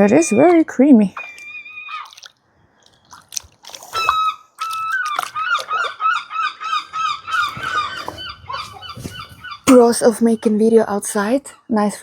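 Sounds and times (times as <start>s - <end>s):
seagulls calling: 0.0s - 2.2s, 3.9s - 11.7s.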